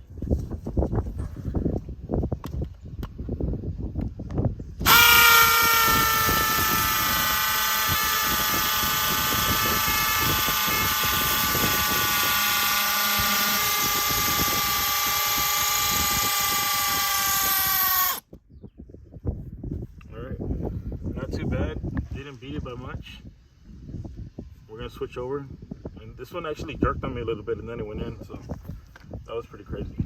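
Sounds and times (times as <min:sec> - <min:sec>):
hammer drill drilling into stone: 0:04.8 - 0:18.2.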